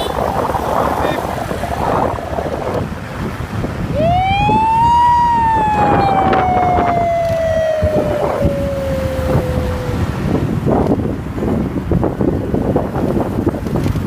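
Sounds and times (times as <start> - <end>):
motorbike riding rumble: 0.0 - 14.0
man imitating a police siren: 3.9 - 10.4.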